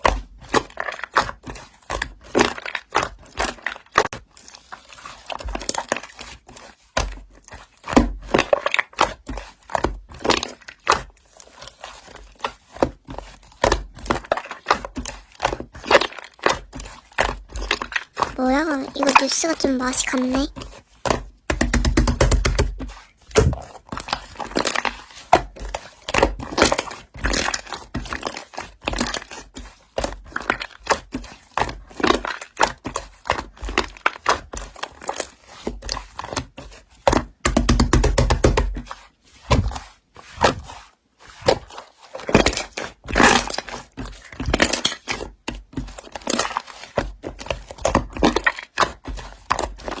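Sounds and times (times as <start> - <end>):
slime crackling and popping: 41.4 - 50.0.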